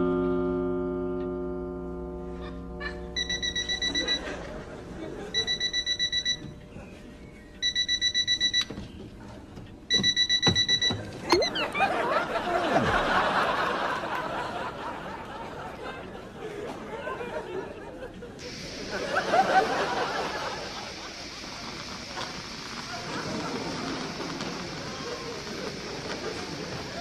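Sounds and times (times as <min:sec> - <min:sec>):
laughter: 0:02.4 - 0:03.1, 0:03.8 - 0:05.7, 0:11.4 - 0:27.0
alarm clock beeping: 0:03.2 - 0:04.4, 0:05.3 - 0:06.6, 0:07.6 - 0:08.8, 0:09.9 - 0:11.8.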